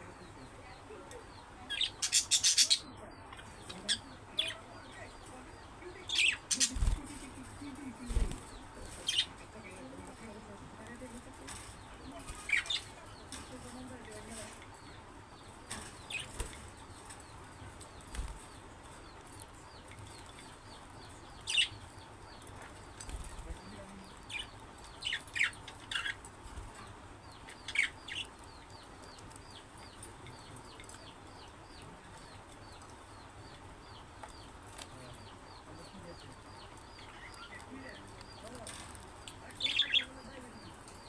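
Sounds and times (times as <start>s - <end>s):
budgerigars chirping: 0.0s - 41.0s.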